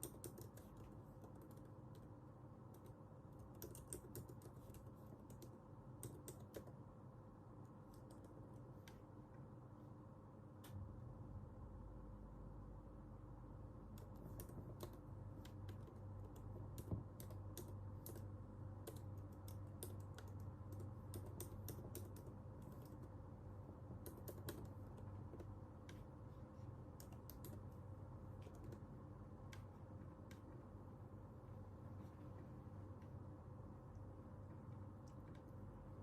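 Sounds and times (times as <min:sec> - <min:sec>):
keyboard keystroke clicks: 0:00.0 - 0:02.1, 0:02.7 - 0:06.8, 0:13.9 - 0:23.1, 0:26.9 - 0:27.8
steady low hum: 0:00.0 - 0:36.0.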